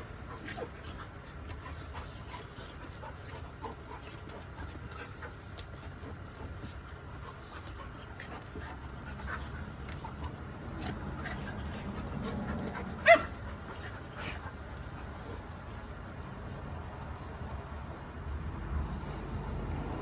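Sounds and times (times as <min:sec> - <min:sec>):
puppies panting: 0:00.3 - 0:20.0
puppy yelp: 0:13.0 - 0:13.4.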